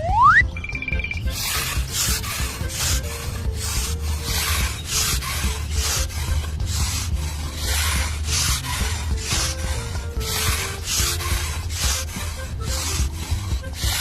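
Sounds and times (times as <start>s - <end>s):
hand sanding strokes: 1.2s - 14.0s.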